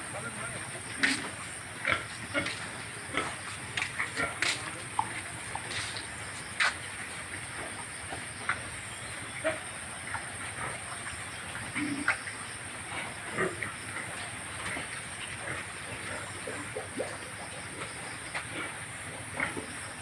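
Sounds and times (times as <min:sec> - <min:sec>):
pigs grunting and squealing: 0:00.0 - 0:05.2, 0:09.3 - 0:20.0.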